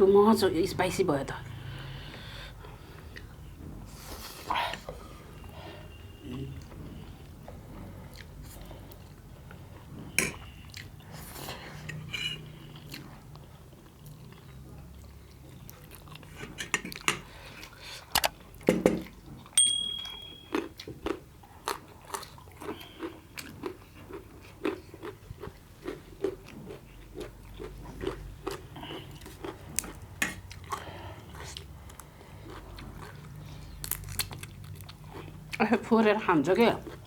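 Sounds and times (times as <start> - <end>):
person chewing food: 1.5 - 35.7, 36.8 - 37.0
high ringing tone: 19.6 - 20.7.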